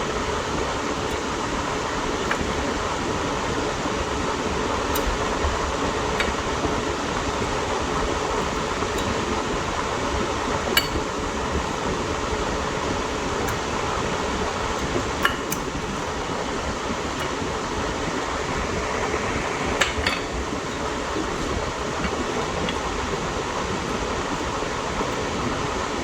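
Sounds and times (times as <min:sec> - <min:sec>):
fan running: 0:00.0 - 0:26.0.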